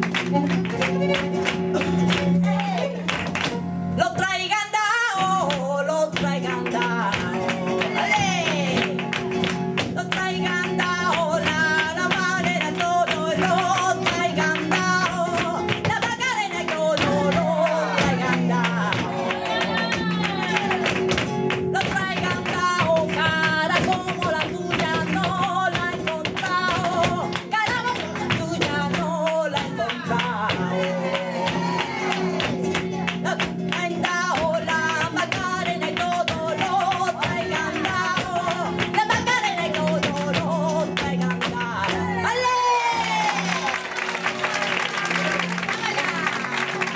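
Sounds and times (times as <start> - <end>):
flamenco guitar strumming: 0.0 - 46.9
flamenco singing: 0.0 - 46.9.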